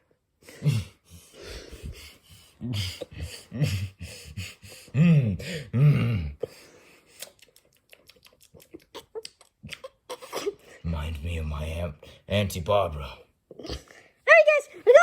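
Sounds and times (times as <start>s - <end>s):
person imitating snoring: 2.6s - 6.4s.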